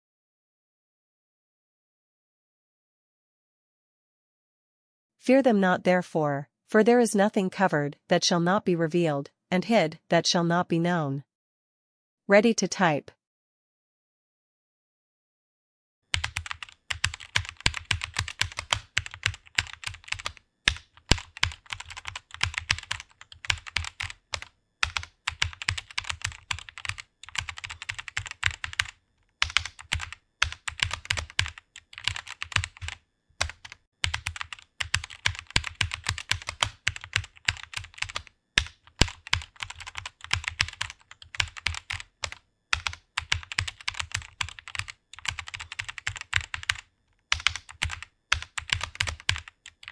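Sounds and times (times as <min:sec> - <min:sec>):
fast typing on computer keyboard: 0:16.1 - 0:49.9.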